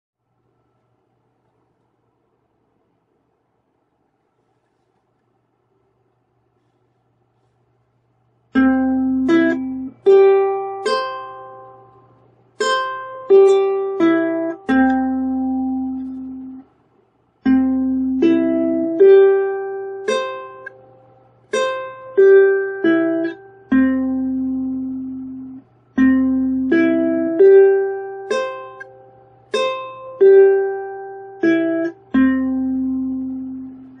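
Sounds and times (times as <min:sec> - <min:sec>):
ukulele picking chime melody: 0:08.6 - 0:16.6, 0:17.5 - 0:34.0.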